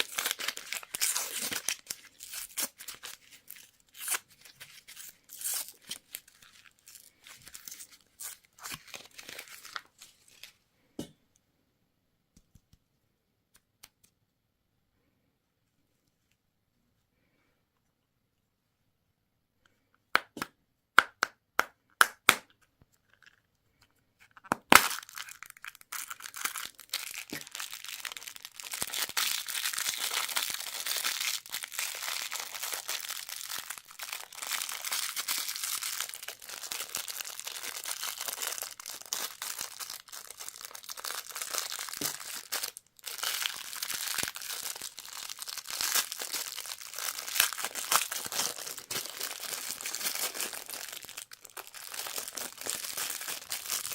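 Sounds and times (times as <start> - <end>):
wrapper tearing crack: 0.0 - 10.5, 24.4 - 53.9
candy wrapper crinkling: 0.0 - 10.6, 22.5 - 53.9.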